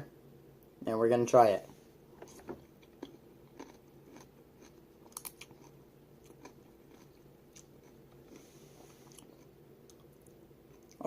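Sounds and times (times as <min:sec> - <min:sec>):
faint chewing noodles: 0:02.3 - 0:11.0.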